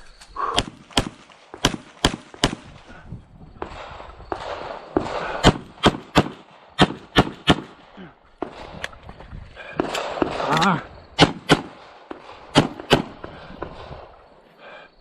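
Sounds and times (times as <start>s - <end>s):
rapid pistol shots: 0.4s - 2.9s, 3.6s - 8.7s, 9.8s - 10.6s, 11.2s - 14.0s.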